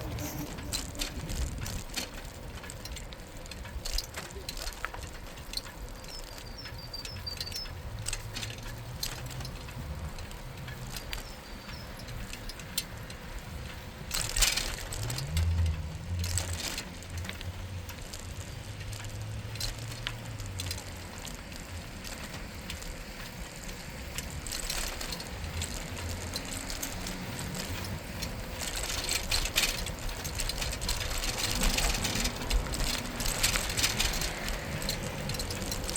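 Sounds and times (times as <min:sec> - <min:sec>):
bicycle tyre and road noise: 0:00.0 - 0:35.9
freewheel ratchet clicking: 0:00.0 - 0:35.9.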